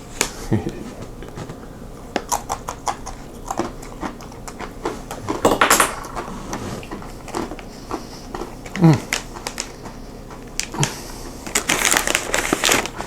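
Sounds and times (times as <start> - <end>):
plastic packaging crinkling: 11.5 - 13.0.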